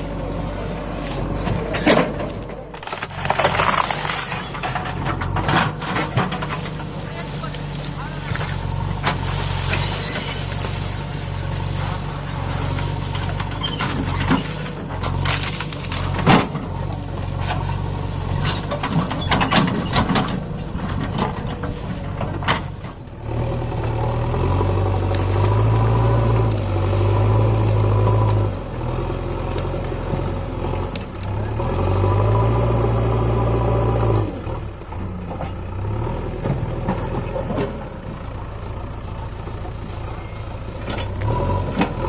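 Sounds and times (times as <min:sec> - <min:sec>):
diesel engine running: 0:00.0 - 0:42.0
metal knocks and clanks: 0:12.8 - 0:23.1.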